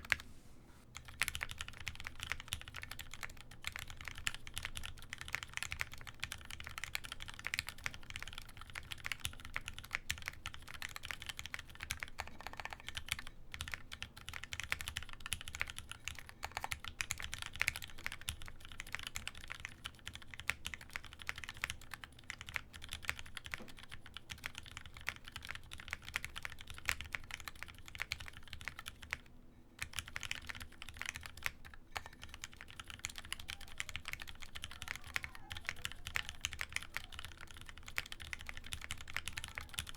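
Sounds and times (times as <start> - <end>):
mechanical keyboard typing: 0.9 - 39.9.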